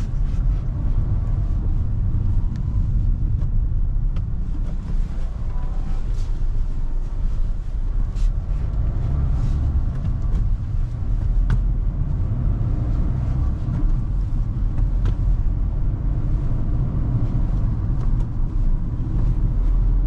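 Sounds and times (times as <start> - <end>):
car engine and road rumble: 0.0 - 20.0.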